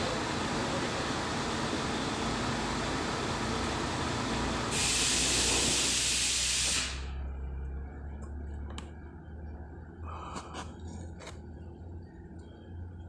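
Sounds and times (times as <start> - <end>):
truck diesel engine running: 0.0 - 6.0
loud hiss: 4.7 - 7.1.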